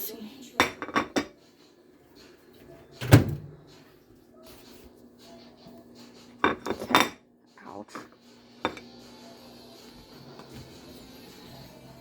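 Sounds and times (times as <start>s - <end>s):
microwave door shutting thud: 3.0s - 3.6s.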